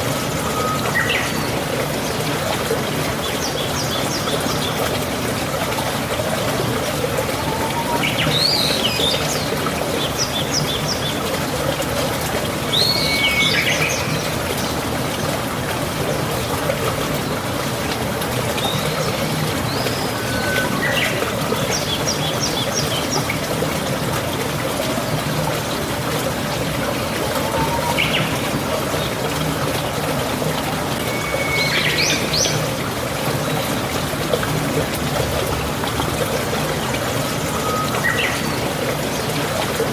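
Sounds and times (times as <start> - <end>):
birds chirping: 0.0 - 4.9, 26.8 - 29.2
running water: 0.0 - 39.9.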